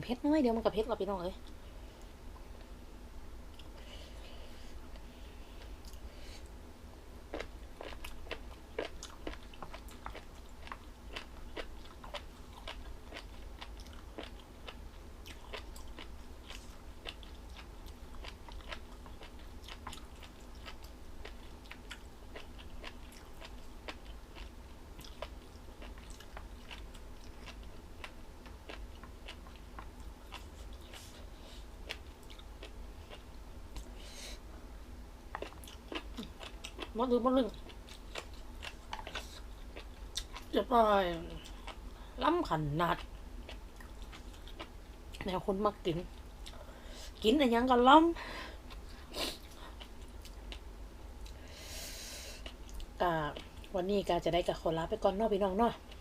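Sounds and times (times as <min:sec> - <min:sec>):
chewing crunchy food: 0:07.3 - 0:34.0, 0:35.3 - 0:45.3, 0:48.6 - 0:51.4, 0:52.4 - 0:53.8.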